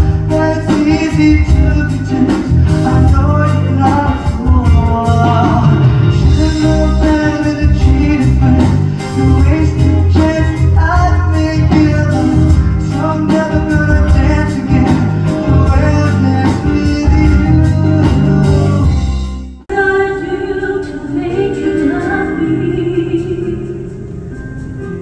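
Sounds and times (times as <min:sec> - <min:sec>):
loud song with heavy bass: 0:00.0 - 0:19.7
softer song with singing: 0:00.0 - 0:25.0.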